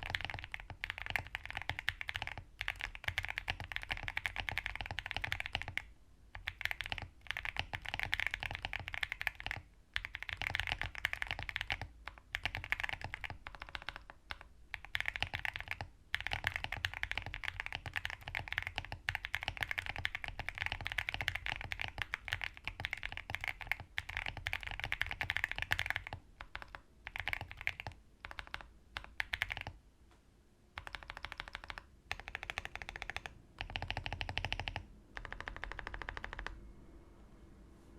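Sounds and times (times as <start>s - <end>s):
typing on mechanical keyboard: 0.0s - 29.8s, 30.8s - 36.6s.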